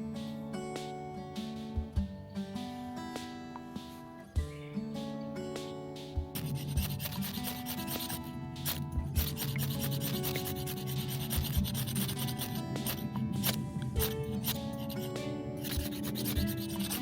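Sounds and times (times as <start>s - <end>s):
acoustic guitar music: 0.0s - 17.0s
tool scraping wood: 6.4s - 17.0s.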